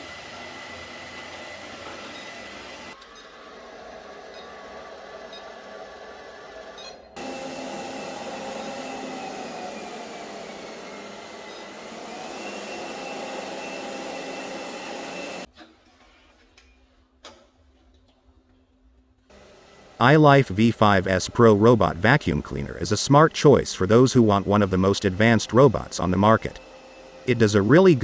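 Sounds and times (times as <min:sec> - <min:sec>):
robot vacuum whirring: 0:07.2 - 0:15.5, 0:19.3 - 0:28.0.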